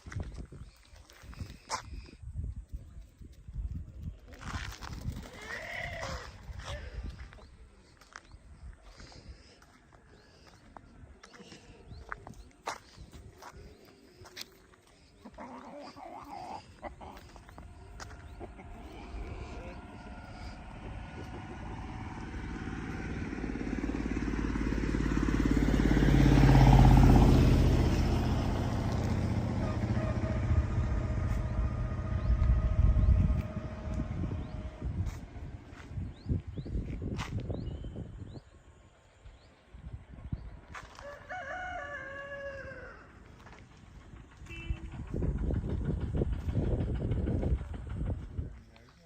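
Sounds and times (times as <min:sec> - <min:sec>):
vehicle engine passing: 0:06.0 - 0:38.3, 0:39.6 - 0:49.0
rooster crowing: 0:40.9 - 0:43.2.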